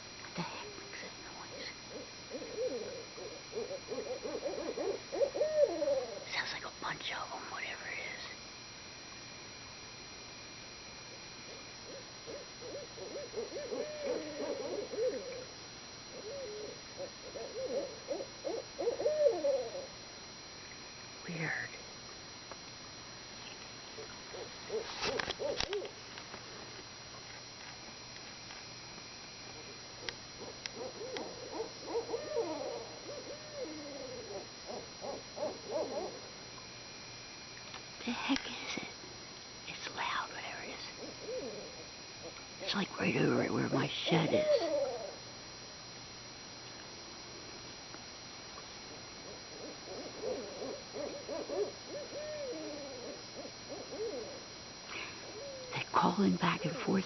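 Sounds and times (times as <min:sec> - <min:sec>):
owls cackling: 0:01.9 - 0:06.2, 0:11.5 - 0:15.5, 0:16.1 - 0:19.9, 0:24.0 - 0:25.9, 0:30.0 - 0:36.3, 0:41.0 - 0:42.4, 0:44.3 - 0:45.2, 0:48.9 - 0:54.5, 0:55.2 - 0:55.8.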